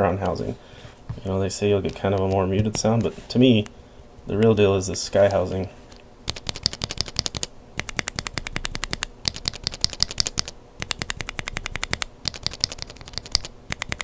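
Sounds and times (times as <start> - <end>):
mechanical keyboard clacking: 6.3 - 14.0.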